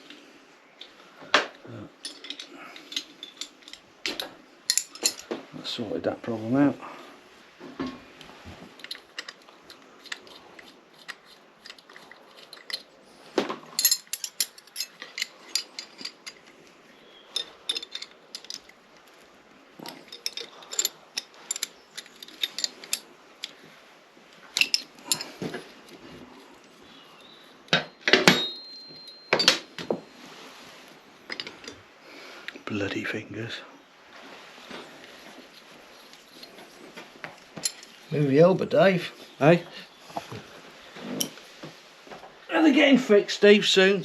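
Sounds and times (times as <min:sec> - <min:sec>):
metal tools and parts clinking: 0:00.8 - 0:05.5, 0:07.8 - 0:31.9, 0:34.6 - 0:41.5
metallic ring: 0:27.2 - 0:30.5.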